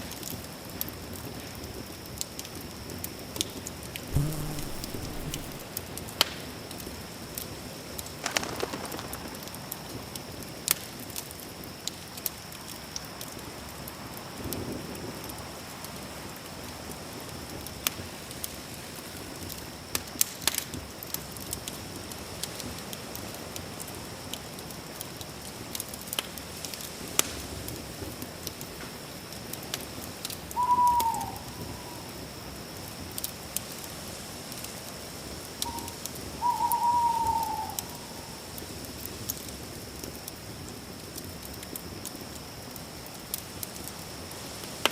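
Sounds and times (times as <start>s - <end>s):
short bird call: 4.1s - 5.6s
night insects: 4.1s - 21.0s, 27.9s - 44.9s
campfire crackling and popping: 8.2s - 10.0s.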